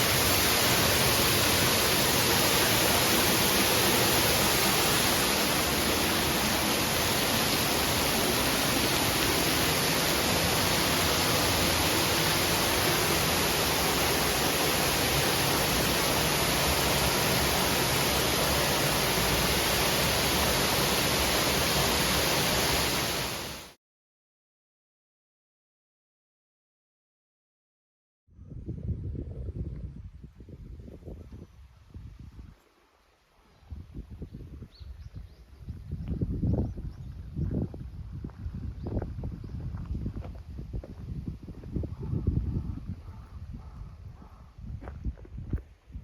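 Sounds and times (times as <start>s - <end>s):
waterfall rushing: 0.0s - 23.8s.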